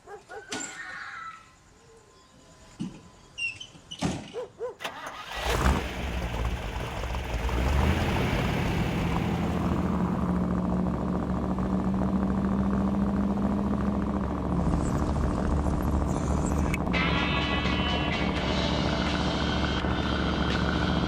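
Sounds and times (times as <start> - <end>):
car engine running: 5.2 - 21.0.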